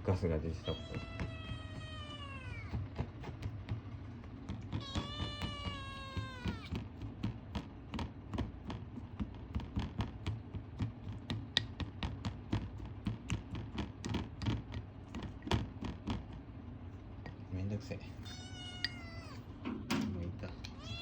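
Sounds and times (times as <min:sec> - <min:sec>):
kitten meowing: 0:00.5 - 0:02.8, 0:04.7 - 0:06.8, 0:18.1 - 0:19.5, 0:20.6 - 0:21.0.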